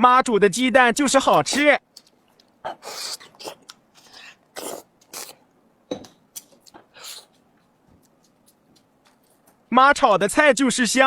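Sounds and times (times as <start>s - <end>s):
person chewing noisily: 1.2s - 9.7s.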